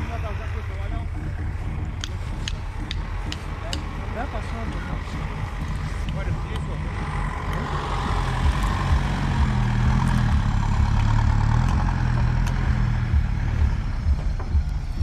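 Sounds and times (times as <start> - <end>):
off-road engine running under load: 0.0 - 15.0
uneven low knocks: 14.0 - 15.0.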